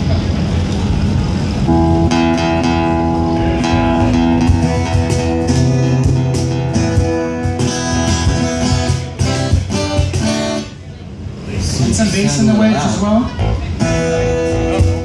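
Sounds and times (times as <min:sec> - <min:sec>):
acoustic guitar strummed and picked: 0:01.7 - 0:10.8, 0:13.3 - 0:15.0.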